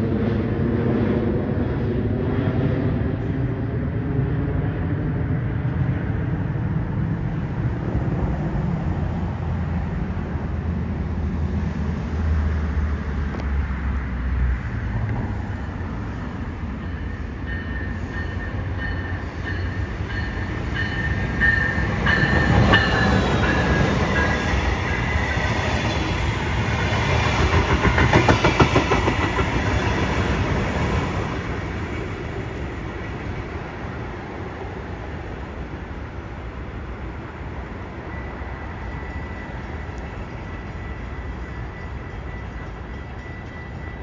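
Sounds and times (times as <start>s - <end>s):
train wheels rumbling on rail: 0.0s - 44.0s
high steady ringing tones: 16.8s - 26.1s.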